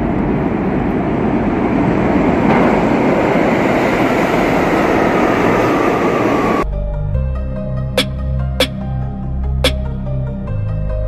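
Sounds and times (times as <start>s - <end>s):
subway train rumble: 0.0s - 7.1s.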